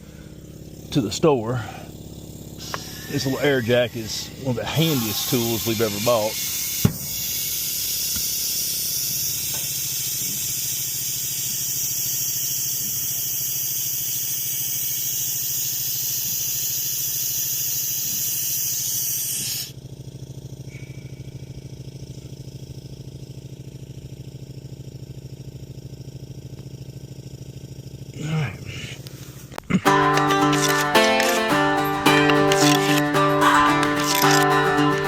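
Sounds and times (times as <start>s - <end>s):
low pulsing hum: 0.0s - 8.4s
air jack hissing: 1.5s - 22.9s, 29.0s - 35.0s.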